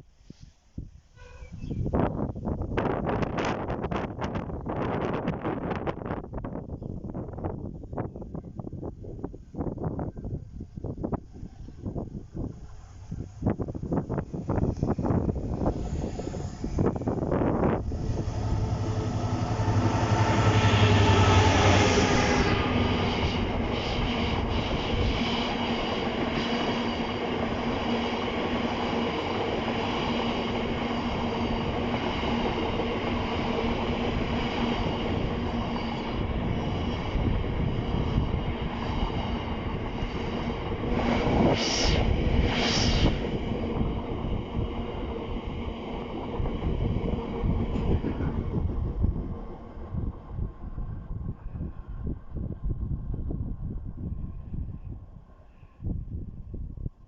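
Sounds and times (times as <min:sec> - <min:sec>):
train passing: 0:08.6 - 0:55.4
rumble of passing carriages: 0:11.6 - 0:23.8.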